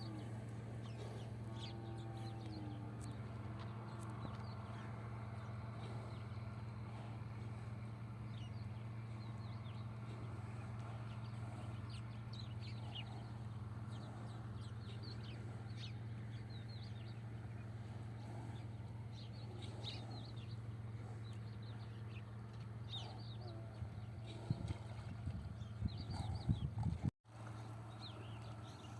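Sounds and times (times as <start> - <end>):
small birds chirping: 0.0 - 28.9
steady low hum: 0.0 - 28.9.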